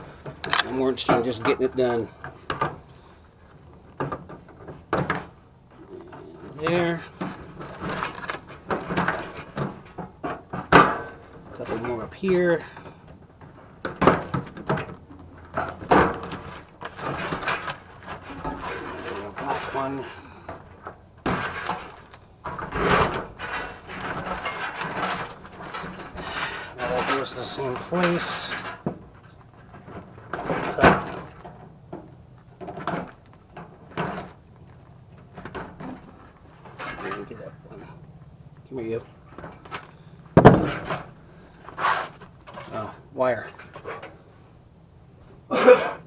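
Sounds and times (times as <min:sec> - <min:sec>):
metal parts clattering: 0:06.8 - 0:10.0, 0:21.3 - 0:28.8.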